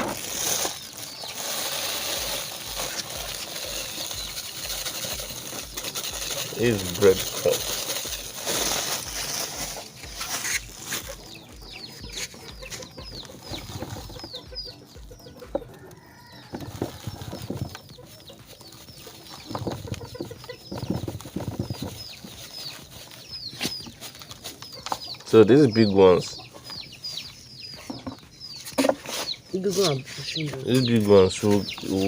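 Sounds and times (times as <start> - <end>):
chicks peeping: 0.0 - 32.0.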